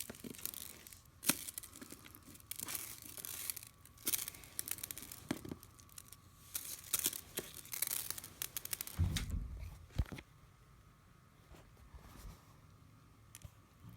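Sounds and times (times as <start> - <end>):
slime crackling and popping: 0.0 - 9.0
sharp knock: 9.0 - 10.0
low thump: 9.0 - 10.2.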